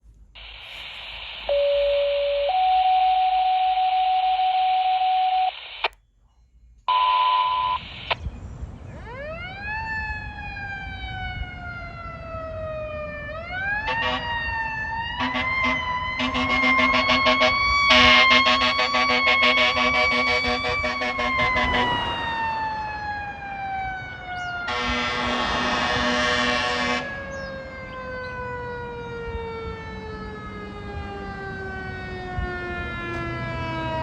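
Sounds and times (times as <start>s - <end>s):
radio channel hiss: 0.4s - 2.5s, 5.5s - 6.0s, 6.9s - 8.2s, 15.2s - 23.0s, 24.7s - 27.0s
radio alert tones: 0.4s - 6.0s, 6.9s - 8.2s, 15.2s - 23.5s, 24.6s - 27.2s
fire engine siren winding: 9.0s - 34.0s
air horn blasts: 13.8s - 22.7s, 24.6s - 27.3s.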